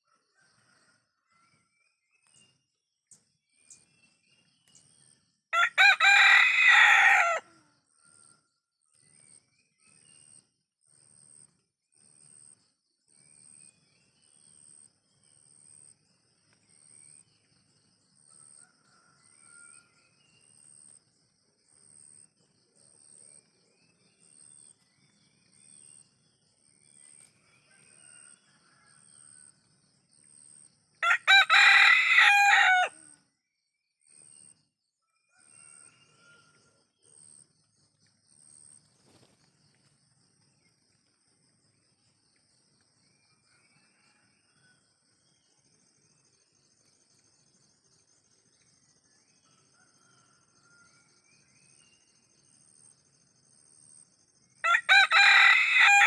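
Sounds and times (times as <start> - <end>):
rooster crowing: 5.6 - 7.8, 27.6 - 29.4, 31.0 - 33.2, 35.3 - 36.7, 54.6 - 56.0.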